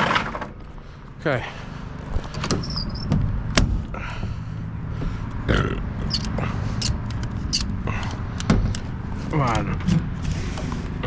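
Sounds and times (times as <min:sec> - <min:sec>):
metal knocks and clanks: 0:00.0 - 0:00.6.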